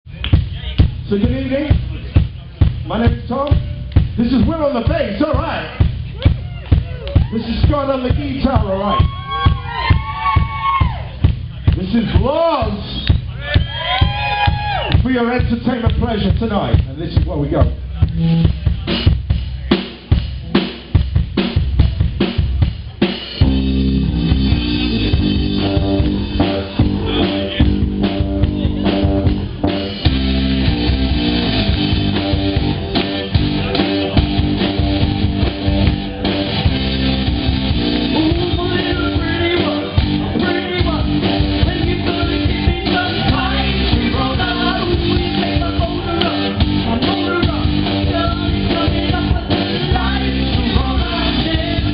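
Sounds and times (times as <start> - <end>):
bass guitar: 0.0 - 51.9
live rock band playing: 0.1 - 51.9
drum kit hits: 14.0 - 51.9
electric guitar: 23.4 - 51.9.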